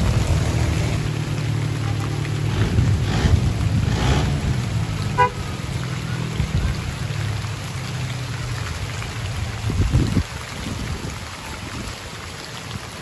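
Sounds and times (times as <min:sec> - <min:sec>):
minibus engine running: 0:00.0 - 0:08.4
heavy rain: 0:00.0 - 0:13.0.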